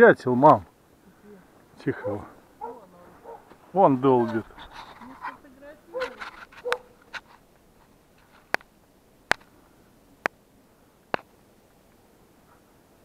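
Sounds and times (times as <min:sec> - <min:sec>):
woodpecker pecking at wood: 0:05.9 - 0:07.3.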